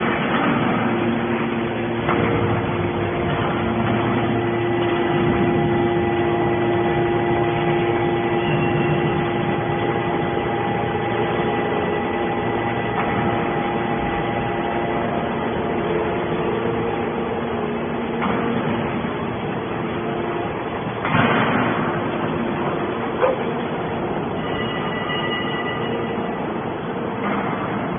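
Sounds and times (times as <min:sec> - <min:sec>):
machine hum: 0:00.0 - 0:27.9.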